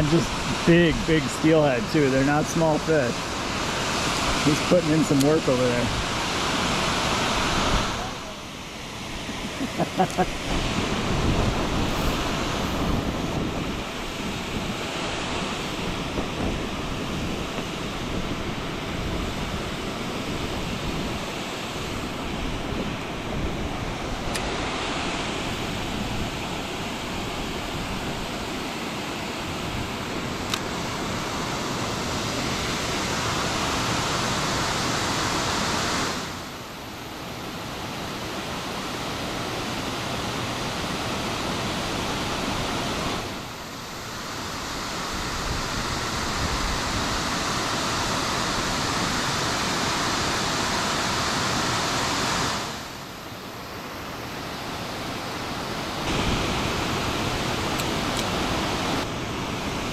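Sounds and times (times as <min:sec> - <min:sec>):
creek water flowing: 0:00.0 - 0:22.4.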